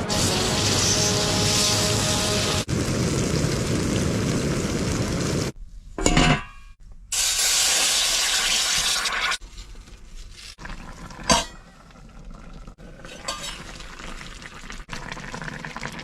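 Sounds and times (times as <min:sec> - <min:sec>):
food sizzling in a pan: 0:00.0 - 0:05.6, 0:07.2 - 0:09.4.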